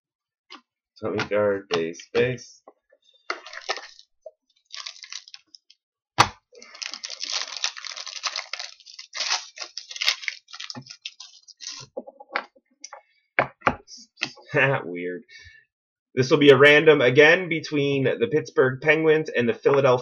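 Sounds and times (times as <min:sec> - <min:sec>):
card packs rustling: 0:03.3 - 0:05.7, 0:06.6 - 0:11.8.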